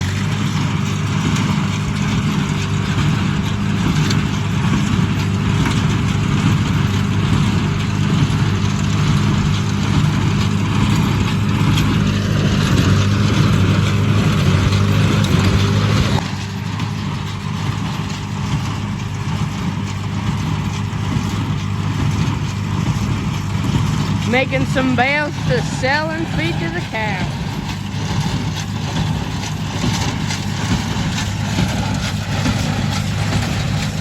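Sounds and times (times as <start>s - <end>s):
tractor engine running: 0.0s - 34.0s.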